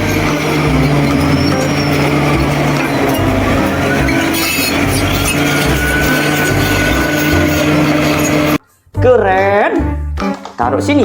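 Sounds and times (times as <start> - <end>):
noisy vehicle engine: 0.0 - 8.6.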